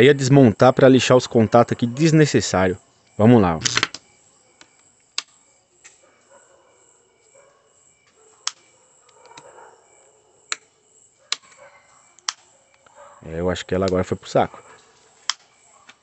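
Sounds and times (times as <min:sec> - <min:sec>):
electrical contactor clicking: 0:12.2 - 0:13.0, 0:15.2 - 0:16.0.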